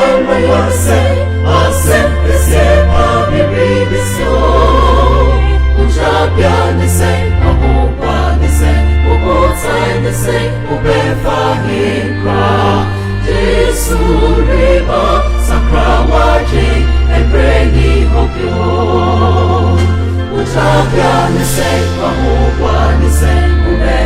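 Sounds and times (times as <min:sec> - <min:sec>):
choir singing gospel music: 0:00.0 - 0:24.0
held bass notes: 0:00.0 - 0:24.0.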